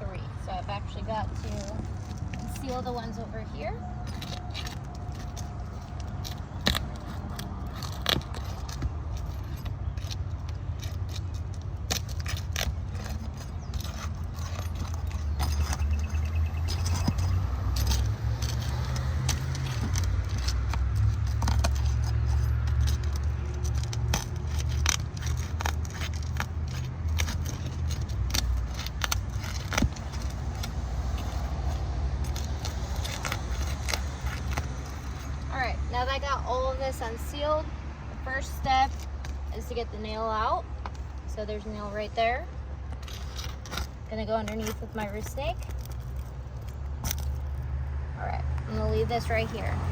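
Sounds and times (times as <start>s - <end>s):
metal tool scraping shingles: 4.0s - 35.5s, 43.0s - 47.4s
sharp clicks and rattles: 4.0s - 35.5s.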